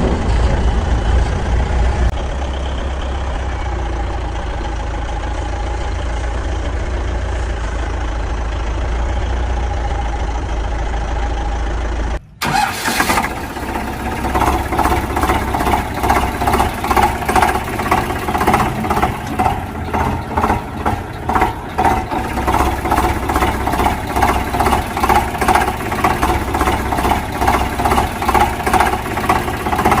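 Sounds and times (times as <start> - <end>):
engine low hum: 0.0 - 30.0
pulsing engine: 0.0 - 30.0.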